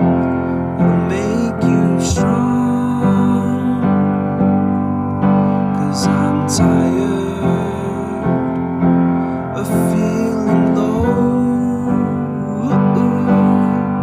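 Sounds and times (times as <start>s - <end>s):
song with piano: 0.0s - 14.0s.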